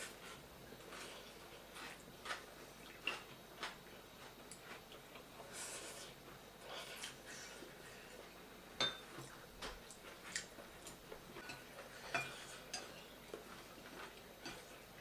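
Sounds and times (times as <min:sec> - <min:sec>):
cutlery clinking on a plate: 0:08.8 - 0:09.3, 0:11.4 - 0:13.0.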